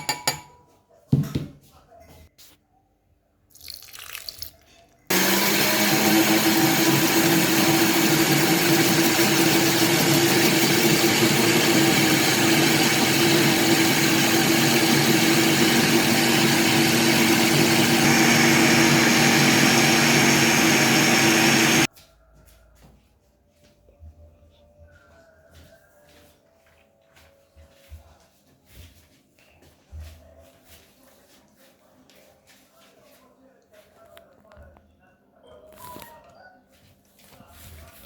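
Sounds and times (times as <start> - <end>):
electric blender running: 5.1 - 21.9.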